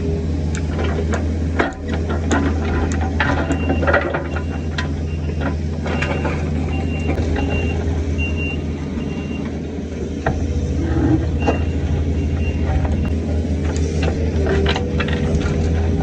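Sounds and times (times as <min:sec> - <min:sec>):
excavator diesel engine running: 0:00.0 - 0:16.0
backup alarm beeping: 0:03.4 - 0:09.4, 0:11.3 - 0:13.1.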